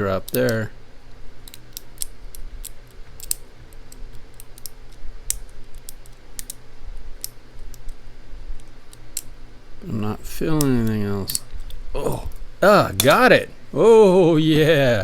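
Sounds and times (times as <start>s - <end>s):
faint low hum: 0.0s - 15.0s
lock pick clicking and scraping: 1.4s - 6.6s.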